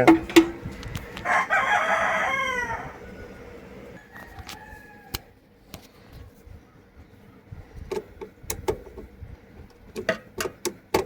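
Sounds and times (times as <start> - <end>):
rooster crowing: 1.2 - 5.4.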